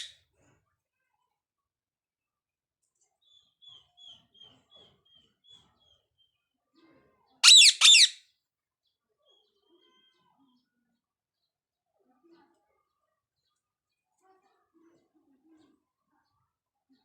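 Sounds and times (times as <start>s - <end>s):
parrot chirping: 7.4s - 8.2s
parrot whistled calls: 7.4s - 8.2s.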